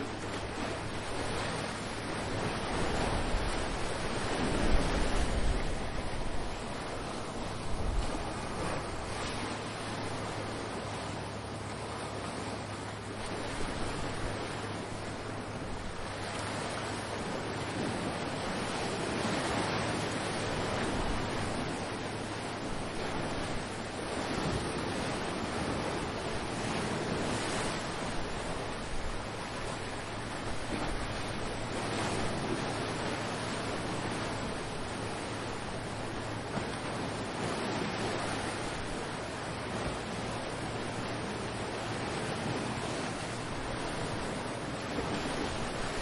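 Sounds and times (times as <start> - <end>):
ocean waves breaking: 0.0 - 46.0.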